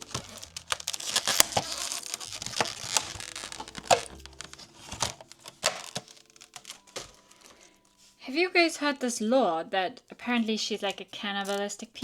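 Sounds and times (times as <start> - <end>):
packaging crinkling and tearing: 0.0 - 8.0, 10.4 - 12.0.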